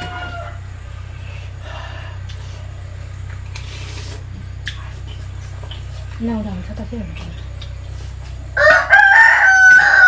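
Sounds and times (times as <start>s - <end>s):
rooster crowing: 0.0s - 1.2s, 8.4s - 10.0s
steady low hum: 0.0s - 10.0s
small mouth noises: 3.3s - 6.2s.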